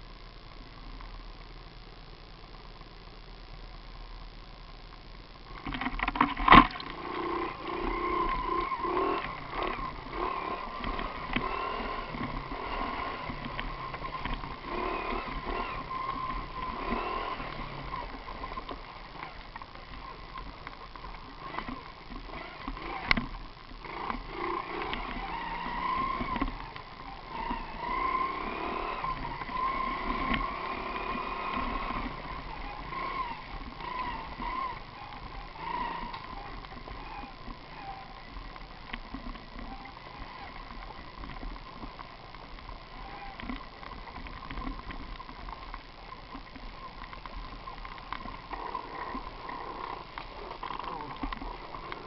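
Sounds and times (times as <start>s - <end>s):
small engine whining when revved: 6.5s - 20.5s, 21.2s - 38.6s, 39.2s - 41.5s, 42.9s - 44.8s, 48.5s - 52.0s.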